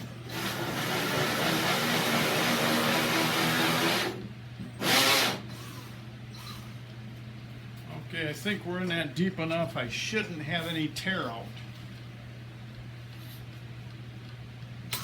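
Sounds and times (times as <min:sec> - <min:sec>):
power drill cutting with hole saw: 0:00.3 - 0:04.2, 0:04.8 - 0:05.4.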